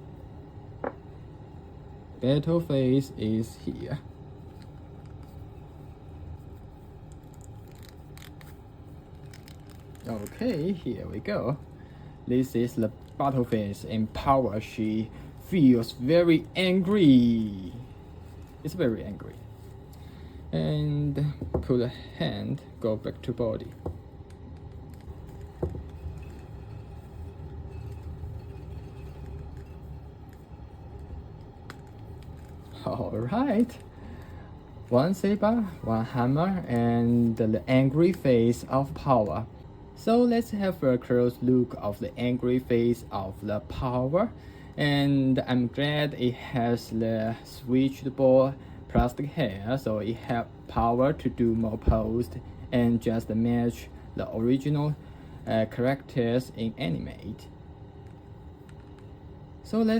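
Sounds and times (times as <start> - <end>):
low background rumble: 0.0 - 59.9
low room hum: 0.0 - 59.9.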